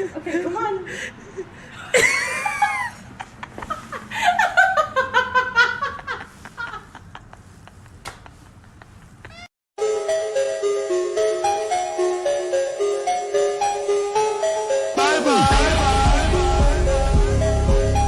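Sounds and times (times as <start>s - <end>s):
person laughing in quick bursts: 5.4s - 9.5s
high-pitched cry: 9.2s - 9.5s.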